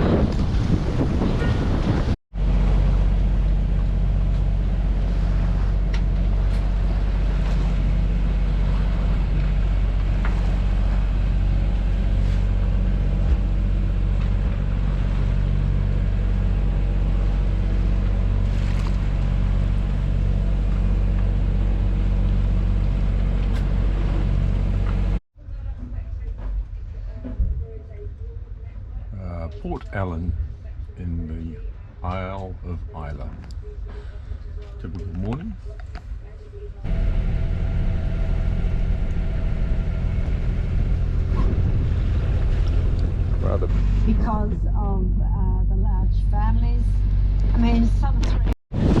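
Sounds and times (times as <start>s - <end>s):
wind on microphone: 0.0s - 2.2s, 36.9s - 45.2s, 46.4s - 49.0s
boat engine droning: 0.6s - 25.2s, 35.7s - 49.0s.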